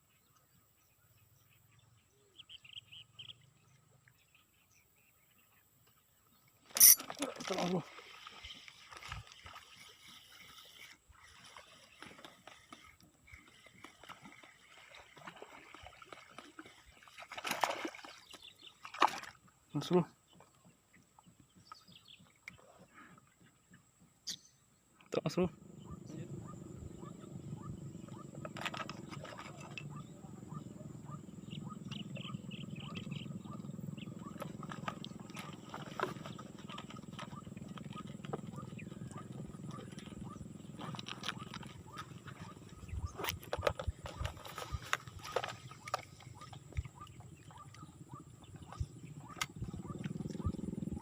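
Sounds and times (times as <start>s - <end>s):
water sloshing and gurgling: 6.2s - 51.0s
high chirps: 6.8s - 7.0s
water splash: 13.9s - 18.2s
frog chorus pulsing: 25.5s - 51.0s.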